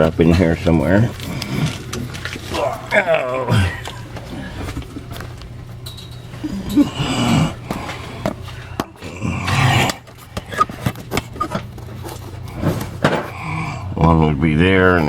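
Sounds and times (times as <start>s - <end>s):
low hum: 0.0s - 14.4s
tools scraping and clicking: 3.8s - 13.4s.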